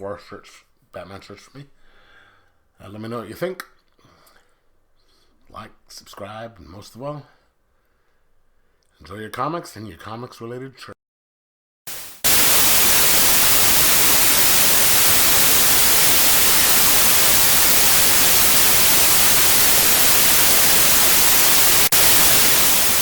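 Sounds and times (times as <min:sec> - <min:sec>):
white noise static hiss: 0:11.9 - 0:23.0.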